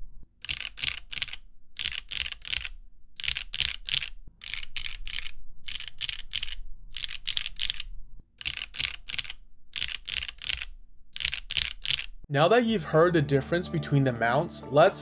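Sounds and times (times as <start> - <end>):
mechanical keyboard typing: 0.4 - 12.2.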